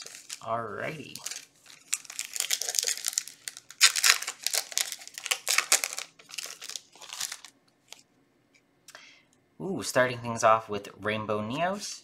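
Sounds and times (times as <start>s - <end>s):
foil wrapper crinkling: 0.0s - 7.6s.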